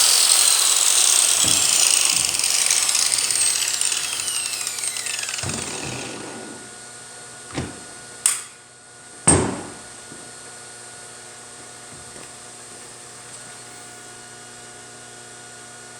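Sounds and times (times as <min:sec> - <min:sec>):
electric grinder winding down: 0:00.0 - 0:06.8
sharp knocks: 0:01.0 - 0:06.5.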